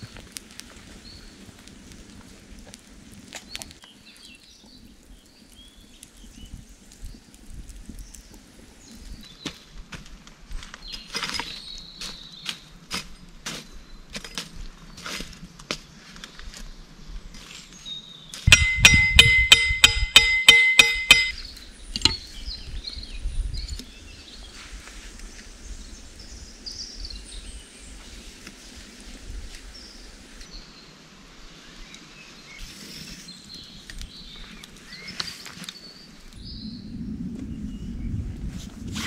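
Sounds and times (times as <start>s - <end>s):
metallic clinks: 18.5s - 21.4s.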